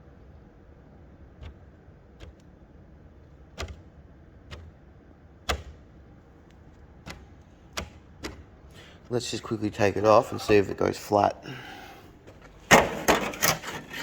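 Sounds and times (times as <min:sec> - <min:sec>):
low steady hum: 0:00.0 - 0:14.0
sharp clicks and knocks: 0:01.3 - 0:09.1.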